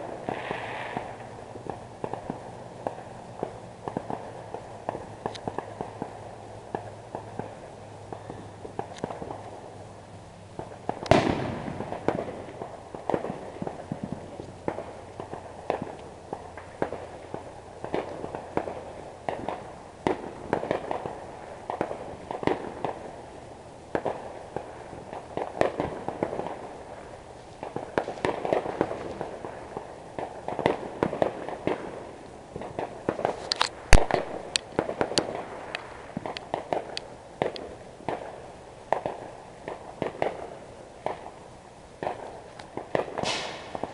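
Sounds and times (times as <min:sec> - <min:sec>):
fireworks bangs and crackling: 0:00.0 - 0:09.8, 0:10.5 - 0:43.9.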